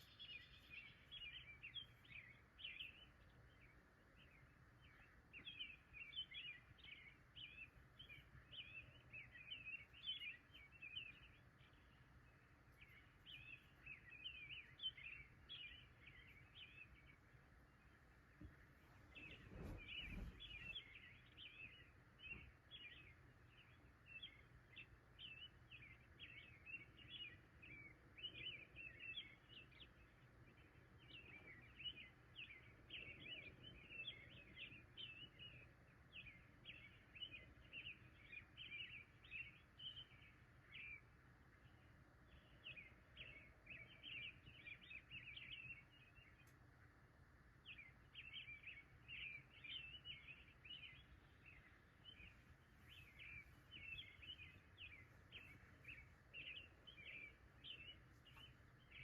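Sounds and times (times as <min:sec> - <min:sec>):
faint low rumble: 0:00.0 - 0:59.0
small birds chirping: 0:00.0 - 0:59.0
soft low thump: 0:18.4 - 0:20.8.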